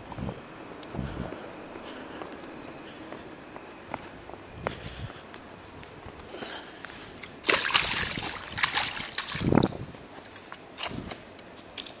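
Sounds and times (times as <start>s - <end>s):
water sloshing and splashing: 7.2s - 9.8s.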